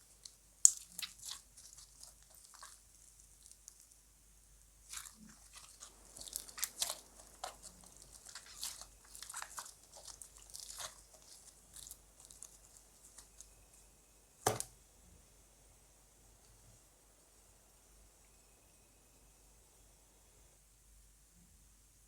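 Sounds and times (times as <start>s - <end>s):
slime crackling and popping: 0.0s - 4.1s, 4.9s - 13.6s.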